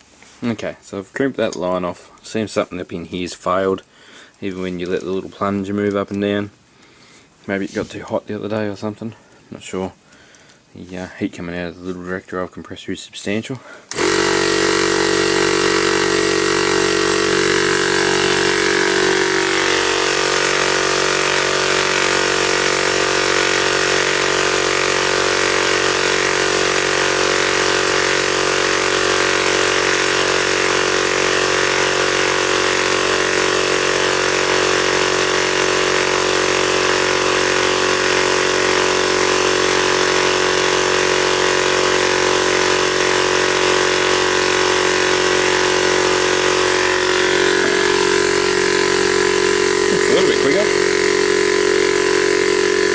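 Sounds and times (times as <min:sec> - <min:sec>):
air compressor running: 0:13.8 - 0:52.9.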